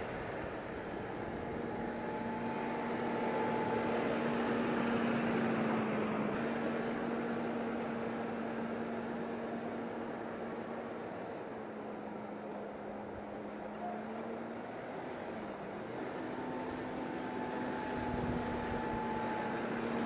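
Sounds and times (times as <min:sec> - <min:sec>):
diesel tractor engine running: 0:00.0 - 0:20.0.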